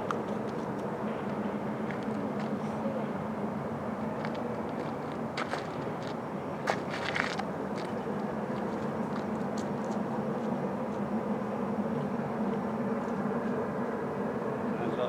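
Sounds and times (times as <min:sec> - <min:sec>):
distant steam locomotive working: 0:00.0 - 0:15.0.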